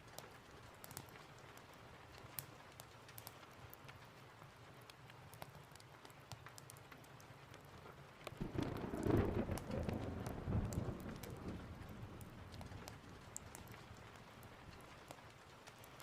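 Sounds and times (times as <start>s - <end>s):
sharp crackling ticks: 0.0s - 4.2s, 4.8s - 16.0s
steady rain: 0.0s - 16.0s
deep thunder rumble: 8.4s - 13.7s.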